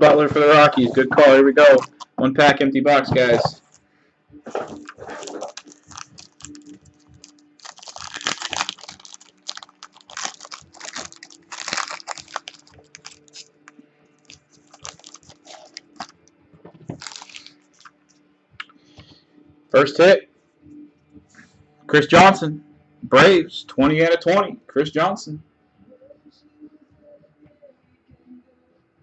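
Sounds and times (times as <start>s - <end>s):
cards rustling: 0.8s - 2.2s, 4.5s - 13.6s, 14.2s - 16.1s, 16.8s - 17.9s
wrapper crinkling and tearing: 1.6s - 2.1s, 4.5s - 13.6s, 14.2s - 16.2s, 16.9s - 17.9s.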